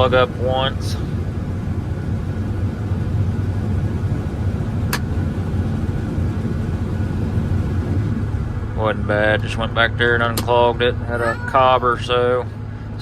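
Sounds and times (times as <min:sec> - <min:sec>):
combine harvester running: 0:00.0 - 0:08.8.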